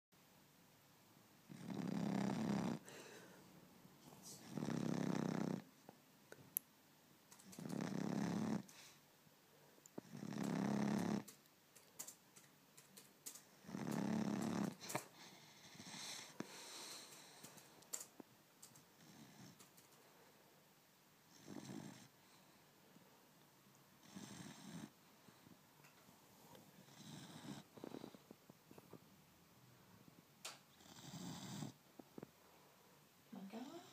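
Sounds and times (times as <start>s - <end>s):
quiet breaths: 1.4s - 6.7s, 7.3s - 33.9s
puppy snoring: 1.5s - 3.2s, 4.0s - 5.8s, 7.3s - 9.0s, 10.0s - 11.4s, 13.4s - 17.5s, 18.9s - 19.9s, 21.3s - 22.5s, 24.0s - 25.6s, 26.7s - 28.5s, 30.7s - 32.0s, 33.3s - 33.9s.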